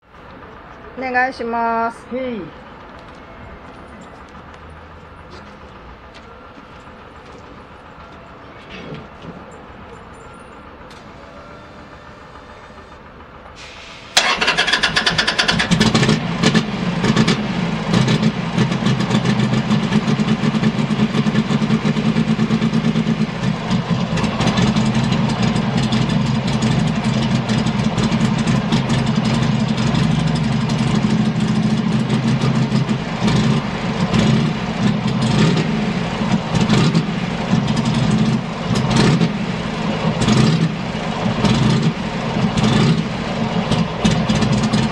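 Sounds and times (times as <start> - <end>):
motorcycle engine idling: 2.6 - 44.9
electric starter cranking: 11.0 - 16.2.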